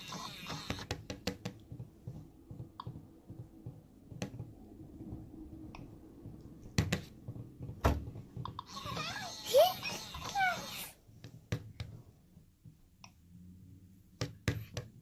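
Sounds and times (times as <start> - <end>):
clicks and taps on plastic egg: 0.8 - 4.6.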